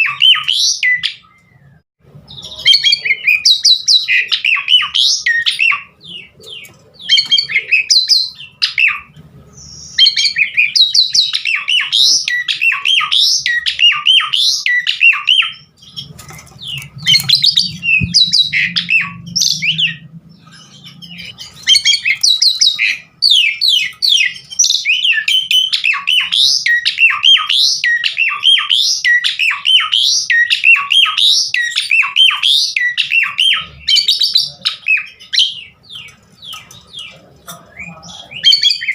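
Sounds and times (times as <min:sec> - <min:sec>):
starling singing: 0:00.0 - 0:38.9.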